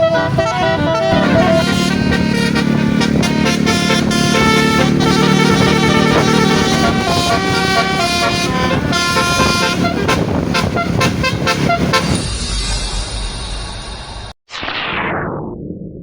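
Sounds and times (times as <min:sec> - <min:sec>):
musical bus horn melody: 0:00.0 - 0:12.2
engine and road noise rumble: 0:00.0 - 0:12.3.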